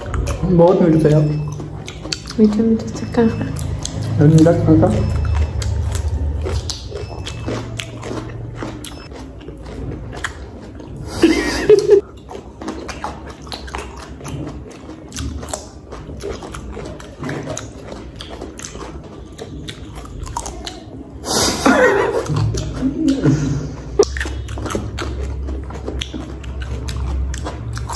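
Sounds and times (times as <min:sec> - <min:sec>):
crunching cucumber slices: 0:05.0 - 0:11.1, 0:11.8 - 0:21.2, 0:24.0 - 0:27.9.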